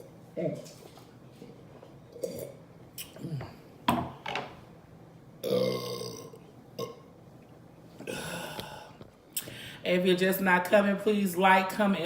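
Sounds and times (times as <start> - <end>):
woman burping: 2.2 - 3.6, 5.4 - 7.0, 8.0 - 8.9.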